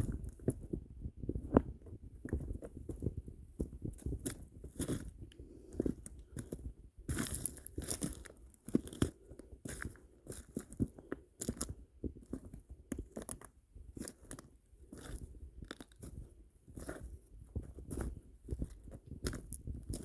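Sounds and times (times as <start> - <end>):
footsteps crunching on stones: 7.1 - 9.0.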